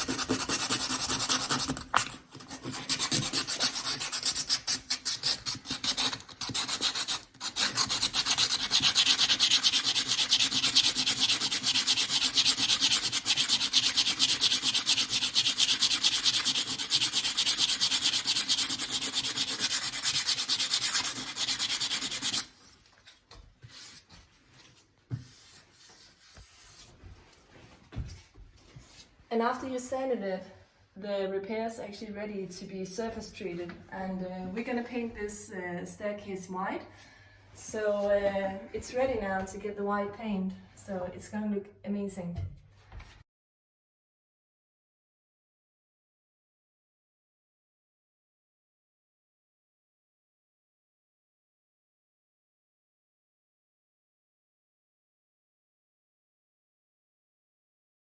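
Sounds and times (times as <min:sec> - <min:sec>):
sandpaper scrubbing wood: 0:00.0 - 0:01.8, 0:02.4 - 0:22.5.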